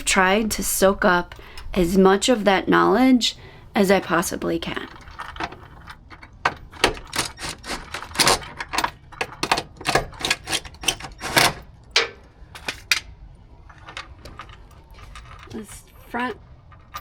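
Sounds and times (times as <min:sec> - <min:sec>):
tools clicking and knocking on metal: 0:04.7 - 0:15.9.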